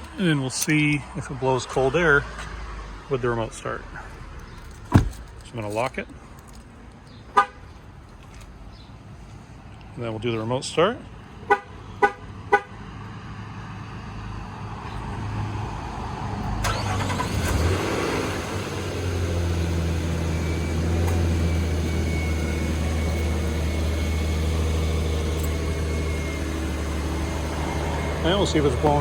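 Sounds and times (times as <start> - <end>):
car engine starting and idling: 16.4 - 29.0.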